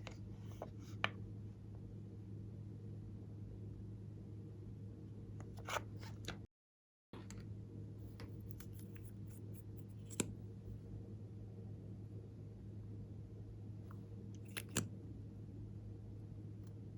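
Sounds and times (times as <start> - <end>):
steady low hum: 7.2 - 16.9.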